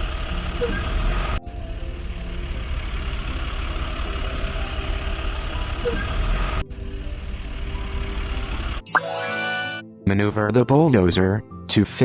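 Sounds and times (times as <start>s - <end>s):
heavy vehicle engine running: 0.0s - 8.8s.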